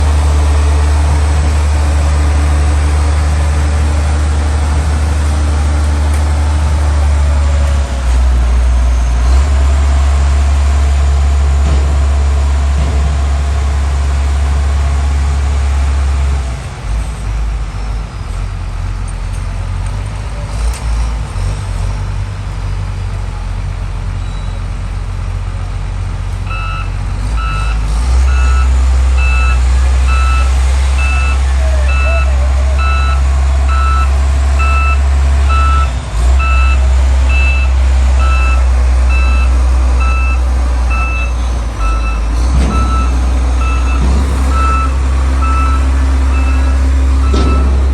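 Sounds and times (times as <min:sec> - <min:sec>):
diesel engine humming: 0:00.0 - 0:47.9
reversing alarm beeping: 0:26.5 - 0:47.9.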